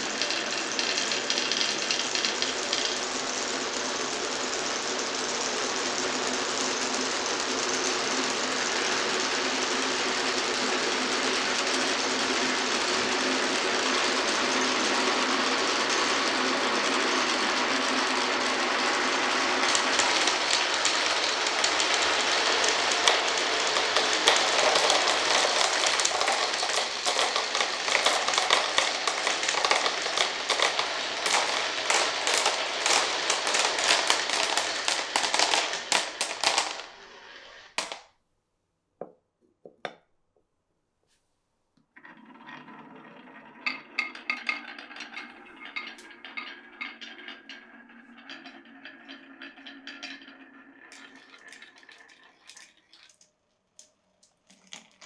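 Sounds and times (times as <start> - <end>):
marbles rolling on wooden run: 0.0 - 38.1, 42.0 - 53.3.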